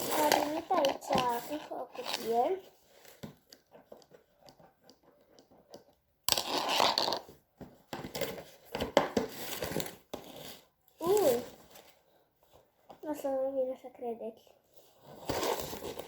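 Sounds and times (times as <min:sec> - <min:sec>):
cardboard packaging ripping: 0:15.2 - 0:16.0.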